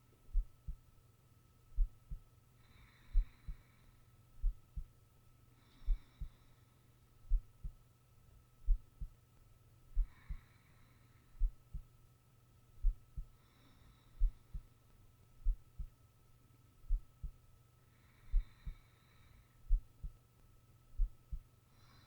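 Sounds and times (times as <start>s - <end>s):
faint steady hum: 0.0s - 22.0s
heartbeat thumps: 0.3s - 0.8s, 1.8s - 2.2s, 4.4s - 4.9s, 7.3s - 7.8s, 8.6s - 9.1s, 11.4s - 11.9s, 12.8s - 13.3s, 14.2s - 14.7s, 15.4s - 15.9s, 16.9s - 17.4s, 18.3s - 18.8s, 19.7s - 20.2s, 21.0s - 21.5s
soft breathing: 1.8s - 7.8s, 9.9s - 12.0s, 12.8s - 16.0s, 16.9s - 20.4s, 21.0s - 22.0s.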